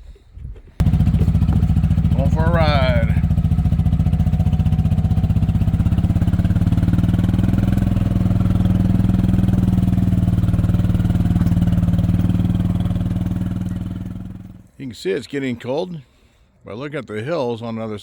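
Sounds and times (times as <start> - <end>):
small engine running: 0.8 - 14.7.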